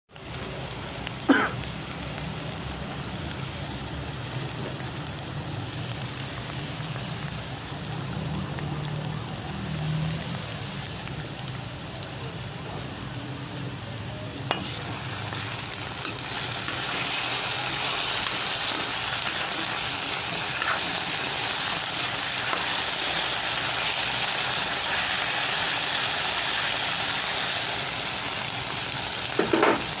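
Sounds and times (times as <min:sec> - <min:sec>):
potatoes sizzling in oil: 0:00.1 - 0:30.0.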